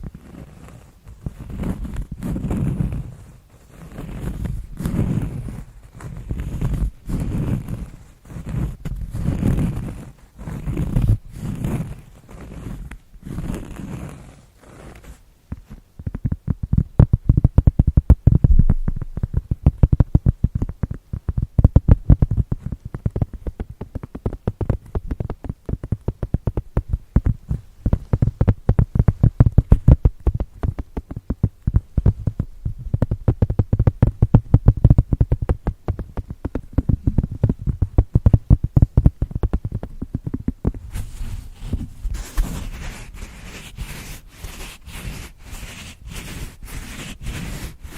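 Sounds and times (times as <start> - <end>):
fast muffled tapping: 15.0 - 47.9
crinkly rustling: 40.8 - 45.4.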